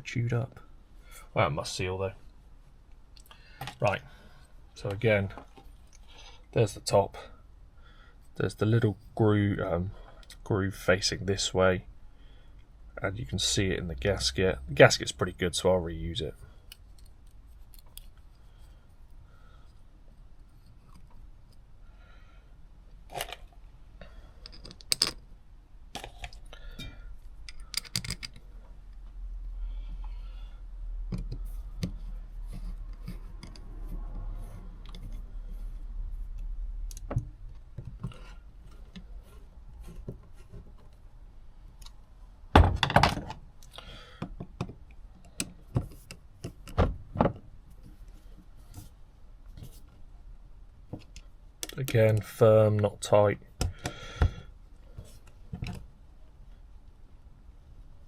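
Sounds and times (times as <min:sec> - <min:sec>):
metal parts clicking on a bench: 0:24.4 - 0:25.2, 0:26.8 - 0:28.4.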